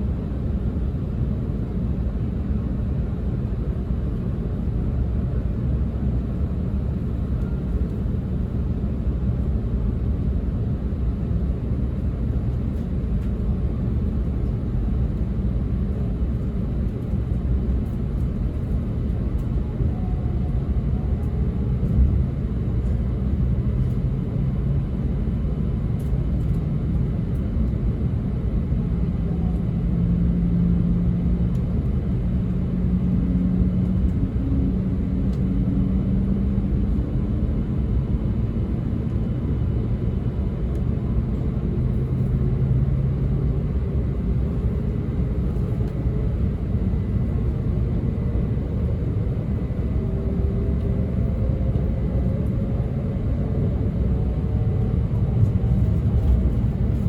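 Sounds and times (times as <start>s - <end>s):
train rumbling on rails: 0.0s - 57.0s.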